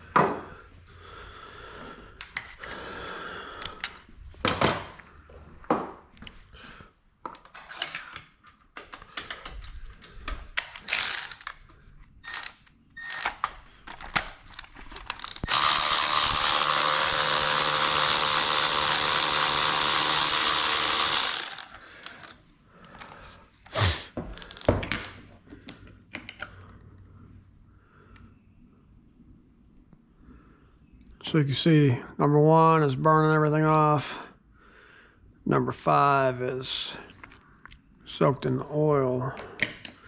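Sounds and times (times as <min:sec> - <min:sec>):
hand tools clicking and clanking: 0:07.2 - 0:23.2
power tool running: 0:15.2 - 0:22.4.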